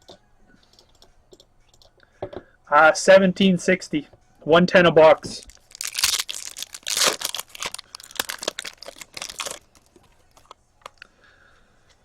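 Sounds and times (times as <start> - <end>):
foil wrappers crinkling and tearing: 5.4 - 11.0.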